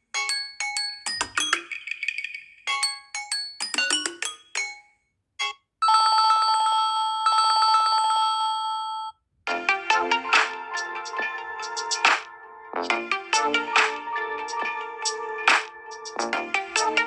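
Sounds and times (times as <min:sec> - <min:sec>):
ringtone melody: 0:00.1 - 0:05.6, 0:09.5 - 0:17.0.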